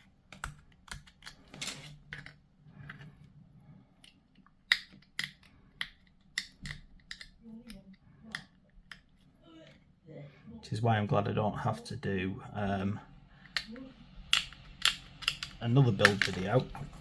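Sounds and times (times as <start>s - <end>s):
plastic parts clicking and snapping: 0.0s - 3.0s, 4.0s - 9.2s, 13.4s - 17.0s.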